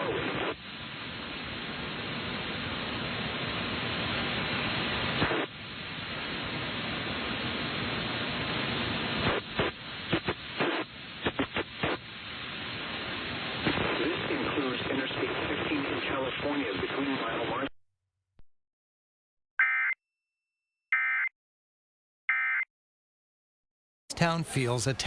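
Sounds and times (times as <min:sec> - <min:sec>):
radio static hiss: 0:00.0 - 0:17.7, 0:24.1 - 0:25.0
static crackles: 0:00.0 - 0:17.7.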